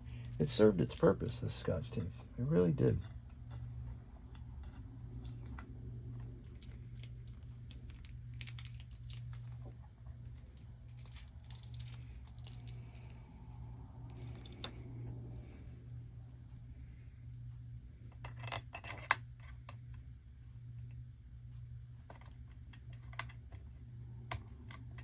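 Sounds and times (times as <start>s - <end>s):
steady low hum: 0.0s - 25.0s
tape peeling crackles: 6.2s - 13.2s.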